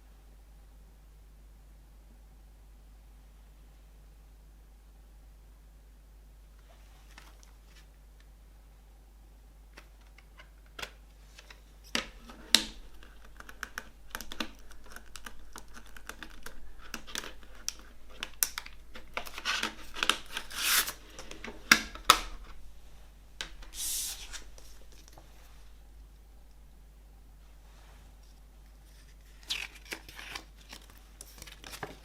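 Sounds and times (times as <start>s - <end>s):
plastic or paper rustling: 11.2s - 25.8s, 28.2s - 32.0s
short hissing slide: 23.7s - 24.5s.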